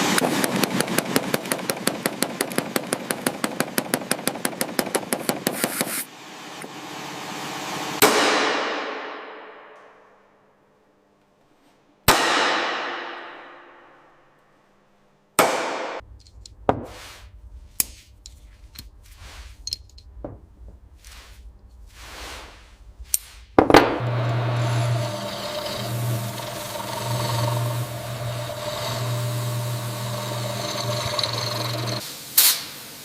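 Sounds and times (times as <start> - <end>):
low hum: 23.9 - 32.0
machine running steadily: 23.9 - 32.0.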